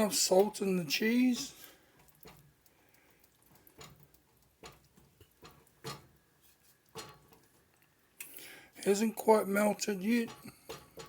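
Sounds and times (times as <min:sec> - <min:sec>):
spoon knocking against saucepan: 0:10.3 - 0:11.0.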